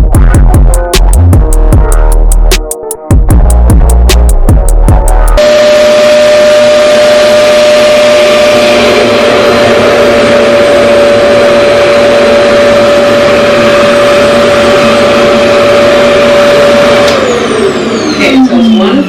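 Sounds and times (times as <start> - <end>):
vacuum hair dryer running: 5.4 - 18.2.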